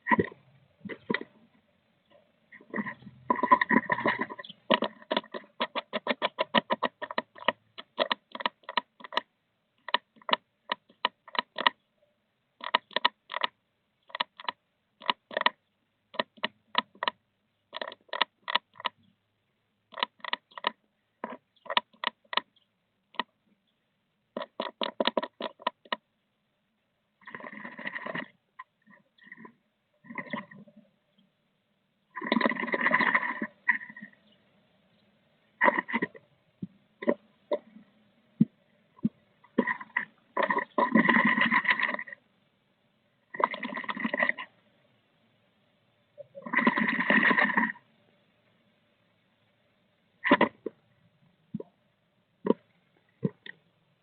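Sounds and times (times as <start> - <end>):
bird pecking on wood: 2.6 - 11.8, 12.6 - 19.0, 19.9 - 22.5, 24.3 - 26.0, 35.6 - 42.2, 50.2 - 50.8.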